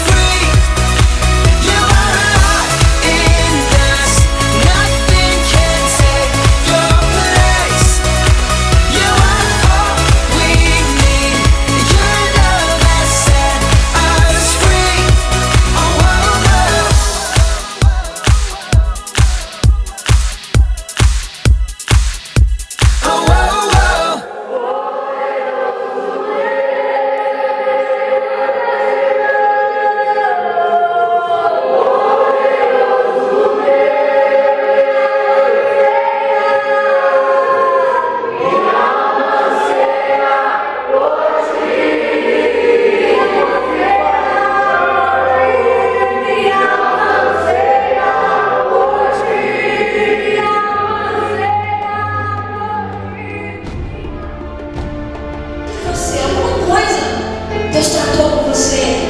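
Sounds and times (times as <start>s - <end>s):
low bass line: 0.0s - 18.1s
choir singing held notes: 0.0s - 21.9s, 22.6s - 54.9s
worship band playing: 0.0s - 24.2s, 55.7s - 59.0s.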